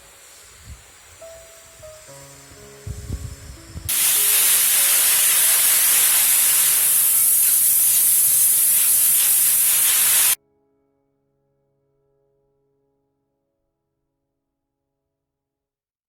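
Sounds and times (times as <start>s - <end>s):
loud steady hissing: 0.0s - 10.4s.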